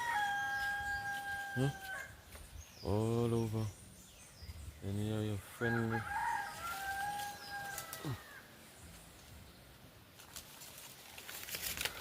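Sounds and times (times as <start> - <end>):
rooster crowing: 0.0 - 2.2, 5.6 - 8.5.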